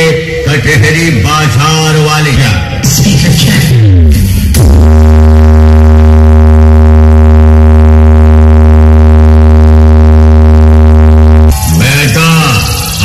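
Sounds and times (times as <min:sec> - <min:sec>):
distorted synthesized bass tone: 0:00.0 - 0:13.0.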